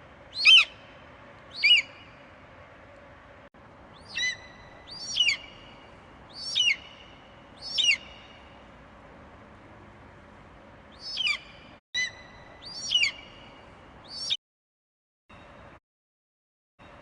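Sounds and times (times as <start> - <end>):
steady background hiss: 0.0 - 14.3
eagle calling: 0.3 - 0.9, 1.5 - 2.2, 4.0 - 8.4, 11.0 - 13.4.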